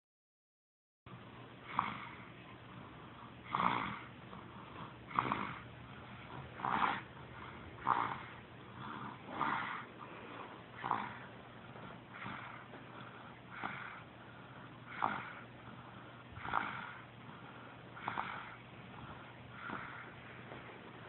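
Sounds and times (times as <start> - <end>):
baby snoring: 1.6 - 2.3, 3.4 - 9.9, 10.8 - 20.2.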